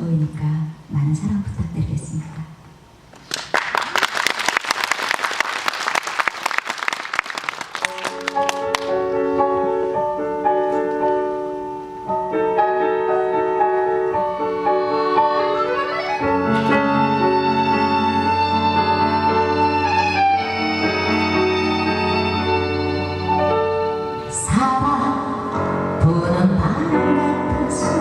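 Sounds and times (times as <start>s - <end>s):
audience applauding: 3.2s - 9.0s
piano and strings music: 7.1s - 28.0s.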